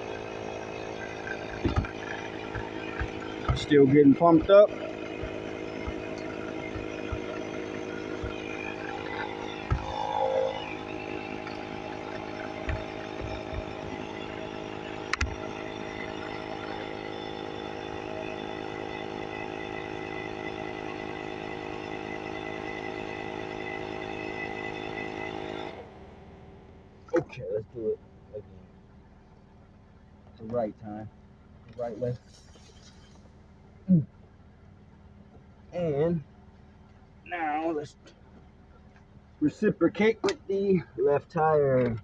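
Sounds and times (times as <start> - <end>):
air compressor running: 0.0 - 27.4, 30.6 - 42.0.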